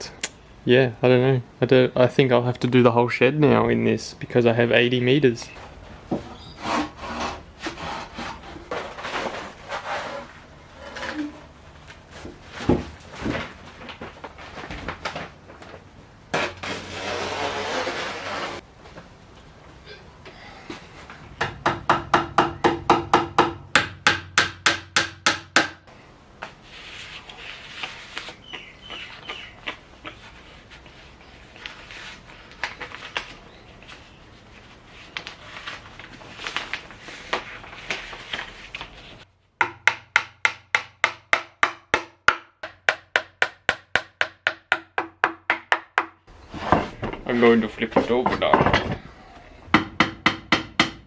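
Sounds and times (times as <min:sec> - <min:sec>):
rubbing and crinkling: 0:05.5 - 0:19.4, 0:26.5 - 0:39.3.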